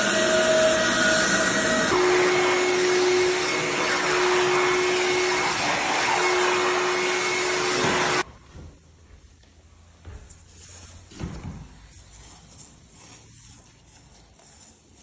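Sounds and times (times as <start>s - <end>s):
dust vacuum rushing: 0.0s - 8.2s
floor sander motor whine: 0.0s - 8.3s.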